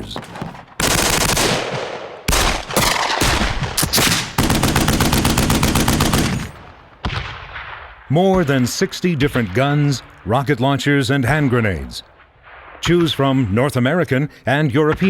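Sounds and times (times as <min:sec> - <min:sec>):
automatic gunfire bursts: 0:00.8 - 0:06.8
single gunshot: 0:01.4 - 0:04.4.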